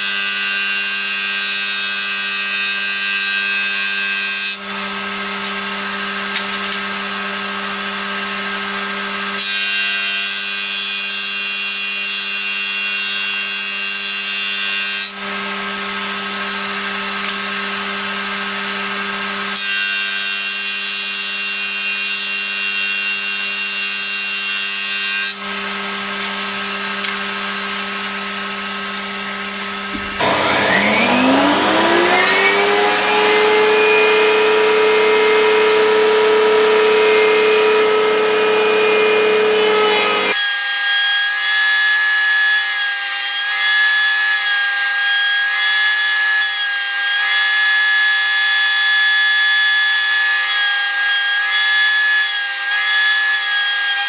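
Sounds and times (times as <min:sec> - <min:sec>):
power tool whining: 0:25.3 - 0:40.5
power tools running on wood: 0:25.5 - 0:40.4.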